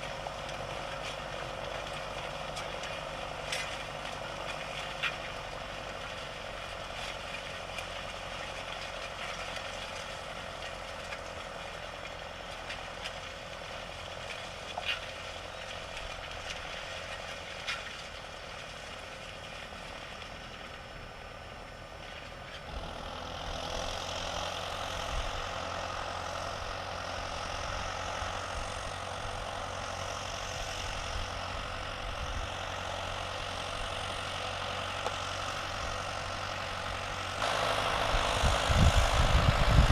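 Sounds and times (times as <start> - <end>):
tractor engine running: 0.0 - 39.9.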